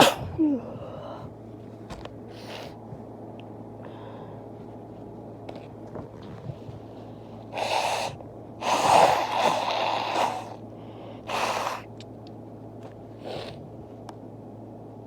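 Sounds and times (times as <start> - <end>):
person blowing nose: 7.5 - 10.6, 11.3 - 11.9.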